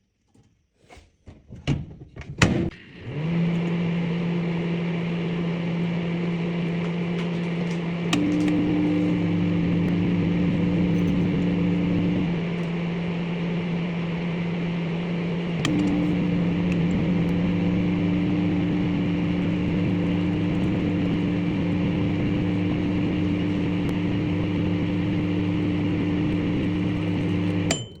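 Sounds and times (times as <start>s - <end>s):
microwave oven humming: 2.4s - 28.0s
microwave click: 6.7s - 12.8s, 15.5s - 28.0s.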